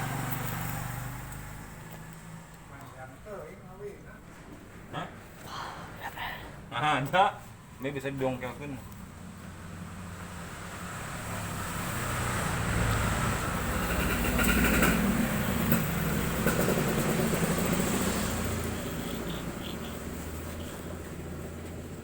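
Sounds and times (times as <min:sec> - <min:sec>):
vehicle engine rumble passing: 0:00.0 - 0:04.9, 0:07.4 - 0:22.0.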